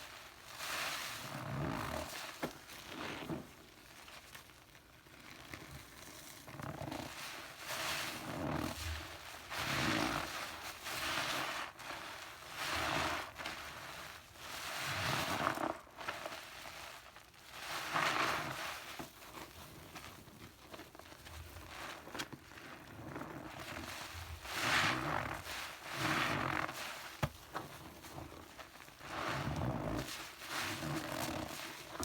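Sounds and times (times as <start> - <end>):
cleaner crackling in a bath: 19.8 - 32.0.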